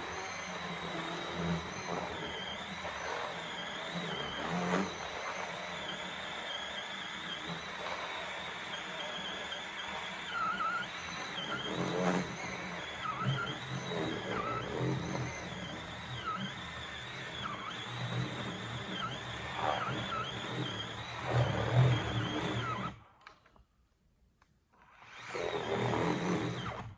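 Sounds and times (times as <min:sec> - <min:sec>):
cordless chainsaw cutting log: 0:00.0 - 0:23.0, 0:24.9 - 0:26.9.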